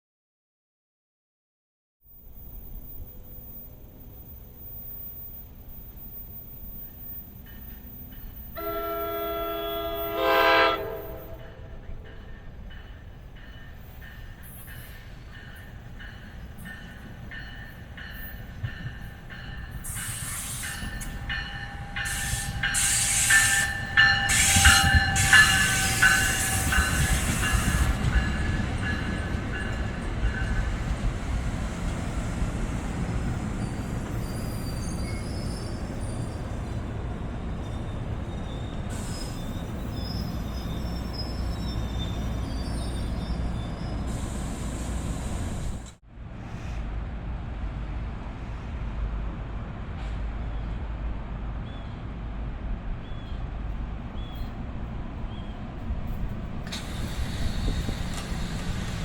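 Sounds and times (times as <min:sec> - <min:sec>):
train rumble: 0:02.1 - 0:59.0
metallic wheel squeal: 0:33.6 - 0:36.8, 0:37.6 - 0:44.3
train wheel clicks: 0:54.3 - 0:59.0.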